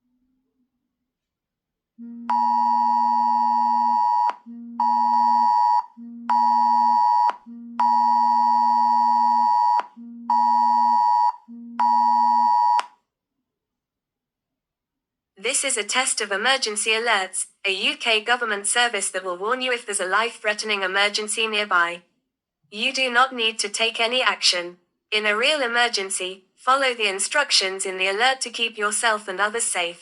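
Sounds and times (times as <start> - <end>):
two-pitch phone alarm: 2.0 - 12.9.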